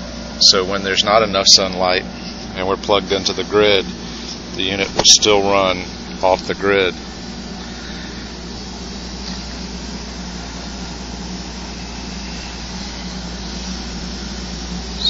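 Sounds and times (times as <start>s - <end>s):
air conditioner fan rush: 0.0s - 15.0s
low constant hum: 0.0s - 15.0s.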